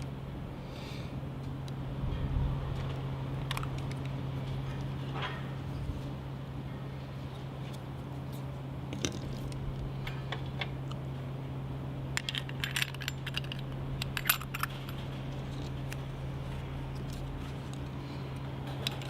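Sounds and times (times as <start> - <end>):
steady low hum: 0.0 - 19.0
small metallic clicks and clinks: 12.2 - 15.8.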